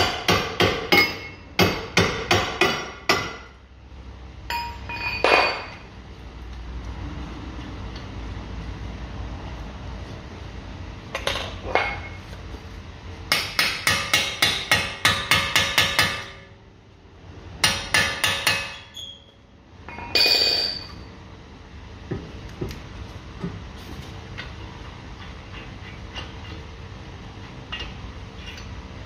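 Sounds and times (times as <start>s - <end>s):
ringing metal clank: 0.9s - 1.4s, 4.5s - 5.8s, 19.9s - 21.1s.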